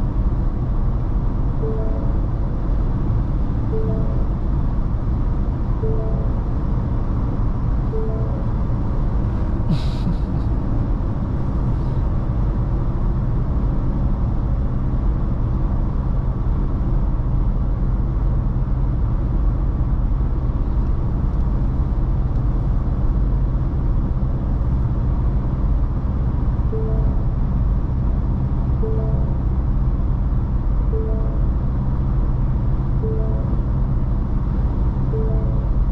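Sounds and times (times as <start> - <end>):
engine and tyre drone inside car: 0.0 - 35.9
short tones: 1.6 - 2.4, 3.7 - 4.4, 5.8 - 6.5, 8.0 - 8.7, 26.7 - 27.4, 28.8 - 29.5, 30.9 - 31.6, 33.0 - 33.7, 35.1 - 35.8.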